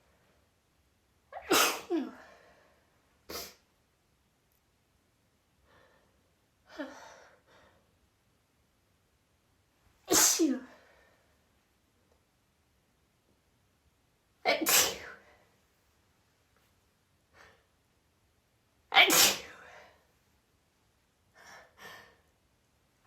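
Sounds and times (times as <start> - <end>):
woman sneezing: 1.4 - 2.2, 10.1 - 10.8, 14.5 - 15.2, 19.0 - 19.7.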